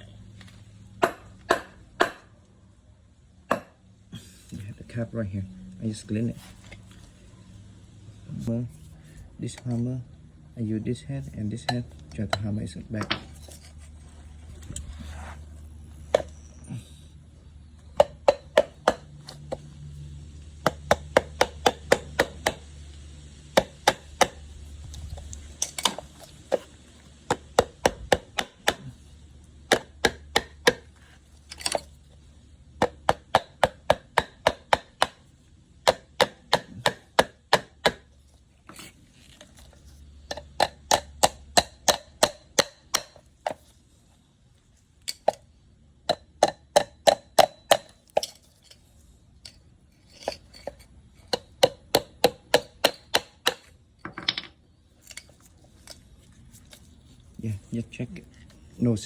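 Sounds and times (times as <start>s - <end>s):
hammer tapping metal: 1.0s - 2.3s, 3.5s - 3.8s, 17.9s - 19.6s, 20.6s - 22.7s, 23.5s - 24.4s, 27.3s - 29.0s, 29.7s - 30.9s, 32.8s - 38.1s, 40.3s - 43.6s, 46.1s - 48.4s, 50.2s - 54.5s.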